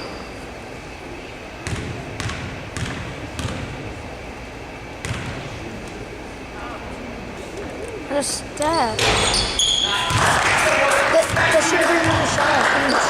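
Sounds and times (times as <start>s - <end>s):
basketball bouncing on court floor: 1.6s - 3.8s, 5.0s - 5.5s, 10.0s - 12.6s.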